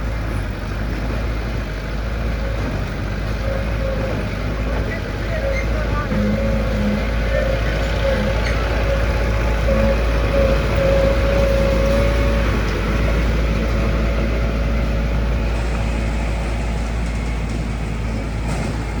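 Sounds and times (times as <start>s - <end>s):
heavy diesel engine rumbling: 0.0s - 19.0s.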